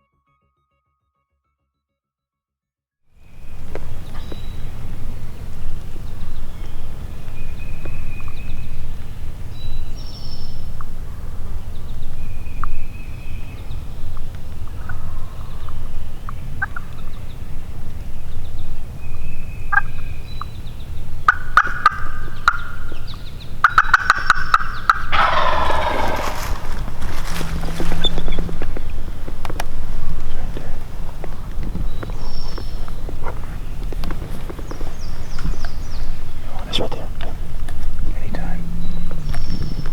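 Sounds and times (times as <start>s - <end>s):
turkey gobbling: 25.1s - 28.5s.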